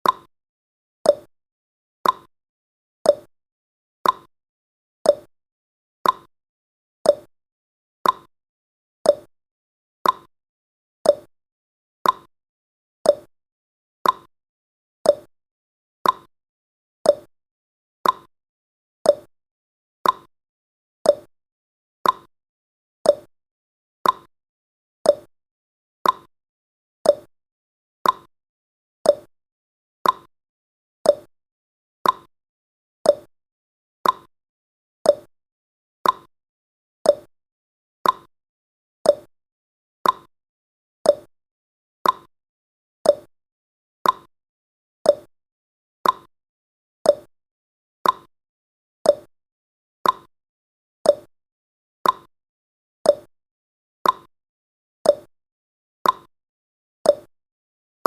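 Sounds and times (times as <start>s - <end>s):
clock ticking: 34.0s - 34.3s.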